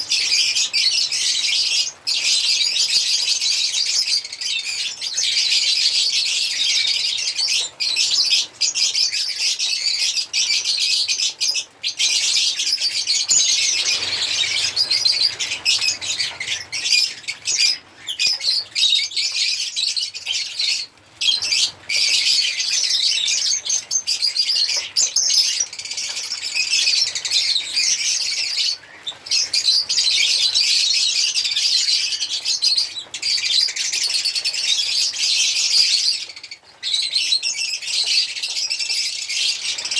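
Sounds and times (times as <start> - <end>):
lovebirds chirping and chattering: 0.0 - 39.9.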